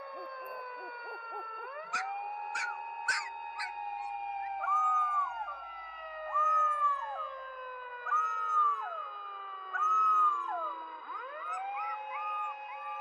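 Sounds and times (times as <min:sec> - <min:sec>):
dog howling: 0:00.0 - 0:03.8, 0:08.1 - 0:08.9, 0:09.8 - 0:13.0
siren winding down: 0:00.0 - 0:13.0.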